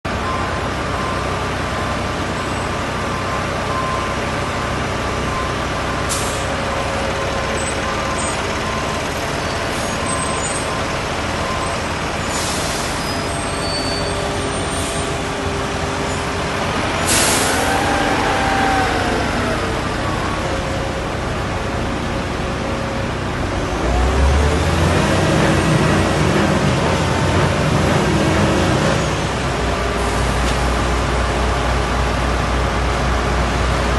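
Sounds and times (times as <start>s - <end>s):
diesel trucks running: 0.0s - 33.9s
rising and falling tone: 16.8s - 21.3s
sharp air hisses: 17.0s - 17.9s.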